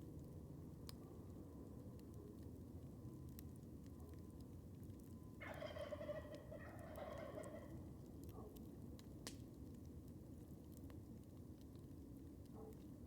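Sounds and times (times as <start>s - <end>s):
campfire crackling: 0.0s - 5.4s, 6.4s - 13.0s
turkey gobbling: 5.5s - 7.7s.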